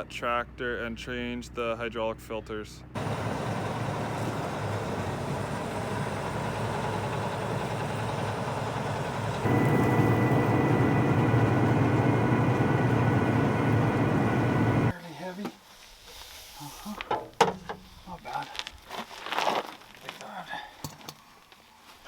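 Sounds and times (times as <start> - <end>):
faint steady whine: 3.0 - 14.9
farm machine engine running: 3.0 - 14.9.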